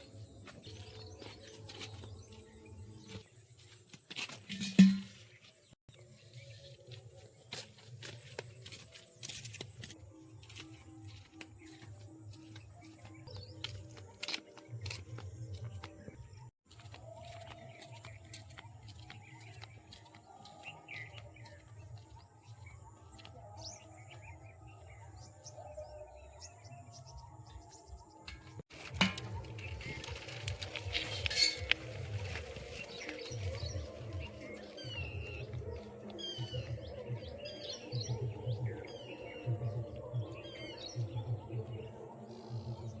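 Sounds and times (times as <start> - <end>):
birds chirping: 17.1 - 43.0.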